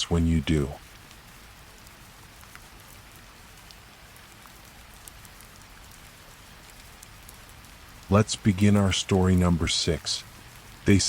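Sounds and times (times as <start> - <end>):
faint raindrop ticks: 0.0 - 11.0
steady rain falling: 0.0 - 11.0.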